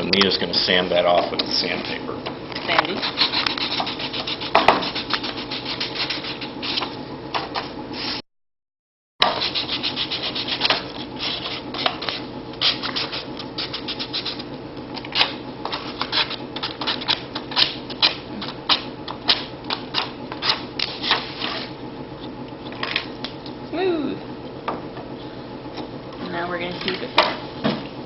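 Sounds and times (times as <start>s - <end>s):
sandpaper scratching: 3.0s - 6.9s, 9.2s - 14.4s.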